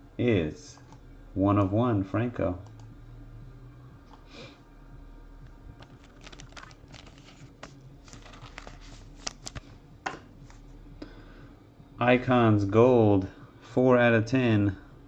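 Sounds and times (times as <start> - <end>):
trading cards clicking and rustling: 5.8 - 10.6.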